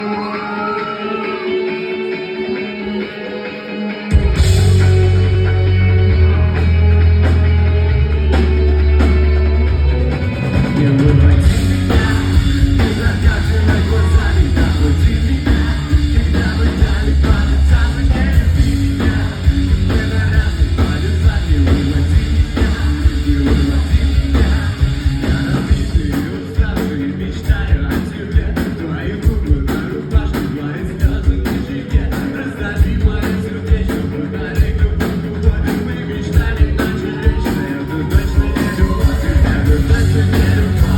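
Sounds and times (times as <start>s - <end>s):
person singing: 0.0s - 7.4s, 10.6s - 40.9s
live rock band playing: 0.0s - 40.9s
heavy bass: 4.1s - 40.9s.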